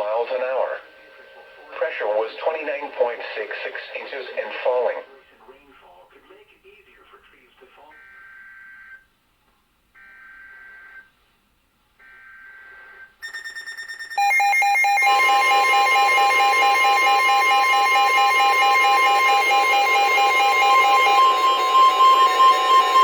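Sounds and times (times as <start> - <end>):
digital data bursts: 13.2 - 23.0.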